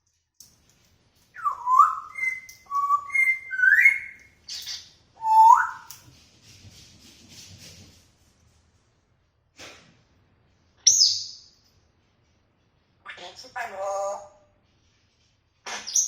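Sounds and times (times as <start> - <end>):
parrot whistling: 1.4 - 4.2, 5.2 - 5.9.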